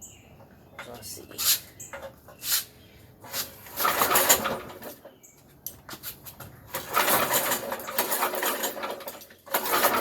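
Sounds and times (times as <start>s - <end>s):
engine cranking on recoil starter: 3.7s - 5.0s, 6.7s - 10.0s.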